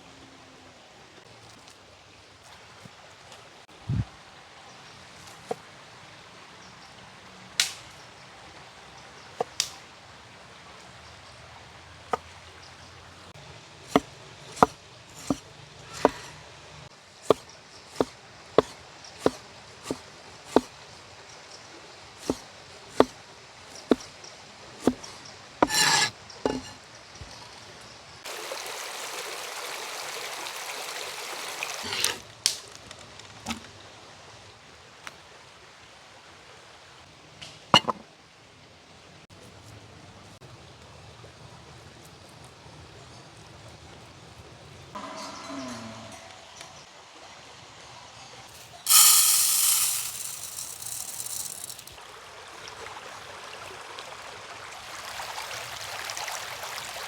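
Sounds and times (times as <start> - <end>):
knife chopping on wooden board: 13.9 - 15.4, 16.0 - 16.3, 18.0 - 20.7, 22.2 - 22.4, 23.0 - 23.2, 24.8 - 26.8
steady hiss: 48.6 - 52.0.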